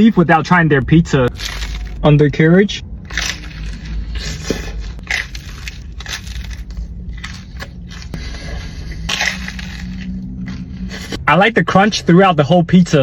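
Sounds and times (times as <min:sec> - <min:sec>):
pizza crust crunching: 0:01.3 - 0:02.0, 0:03.1 - 0:11.2.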